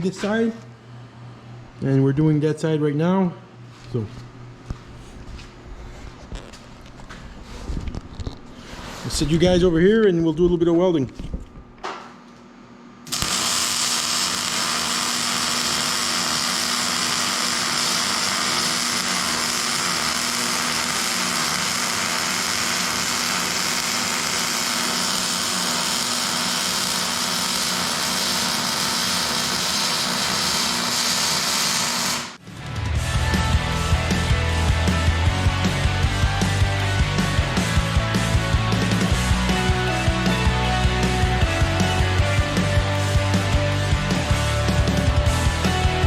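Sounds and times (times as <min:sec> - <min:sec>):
arc welding hiss: 0:13.1 - 0:32.4.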